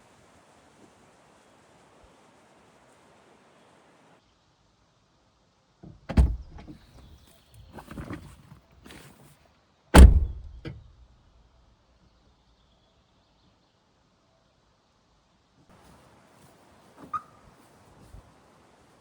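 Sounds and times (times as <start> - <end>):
rustling and scraping: 5.9 - 9.4.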